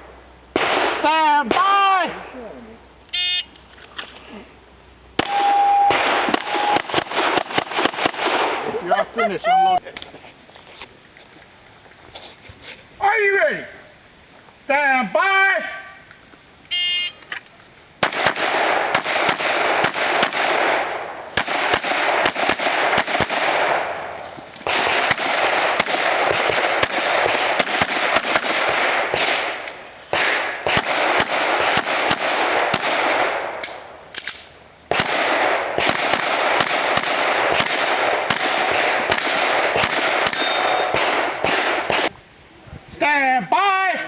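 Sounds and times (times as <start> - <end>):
rapid handgun shots: 0.6 - 2.3, 5.2 - 8.7, 18.0 - 42.2.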